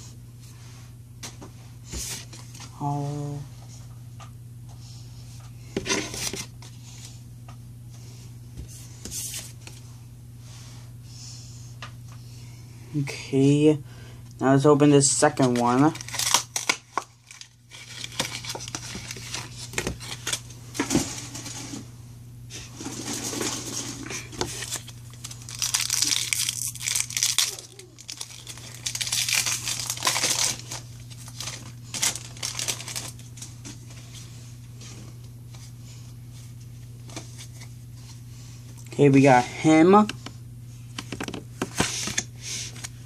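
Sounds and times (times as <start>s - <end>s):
steady low hum: 0.0s - 43.0s
foil pack tearing and crinkling: 15.4s - 20.5s, 22.8s - 33.5s.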